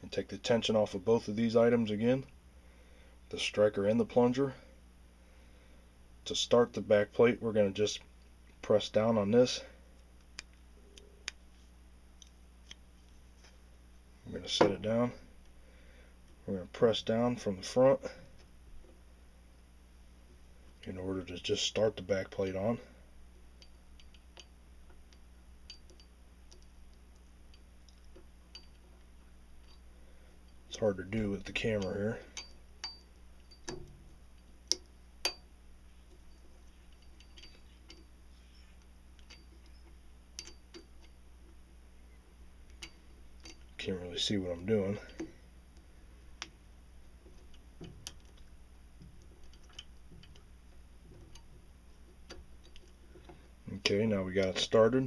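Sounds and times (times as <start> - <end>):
low steady hum: 0.0 - 55.0
small metal parts clicking: 23.6 - 29.0, 36.0 - 41.6, 42.7 - 45.3, 47.2 - 53.5.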